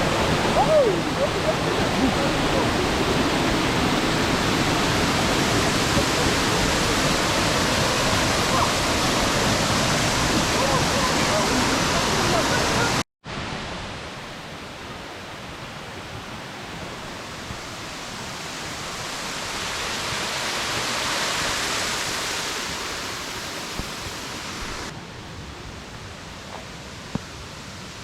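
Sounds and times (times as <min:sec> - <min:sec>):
waterfall rushing: 0:00.0 - 0:28.0.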